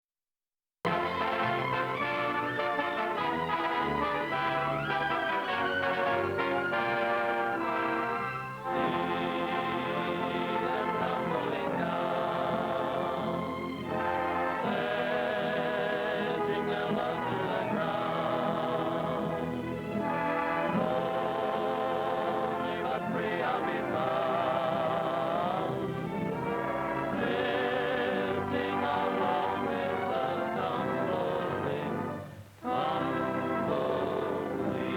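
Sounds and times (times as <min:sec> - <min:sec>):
orchestra playing: 0:00.9 - 0:15.6, 0:19.1 - 0:21.3, 0:25.4 - 0:34.9
choir singing with vibrato: 0:00.9 - 0:34.9.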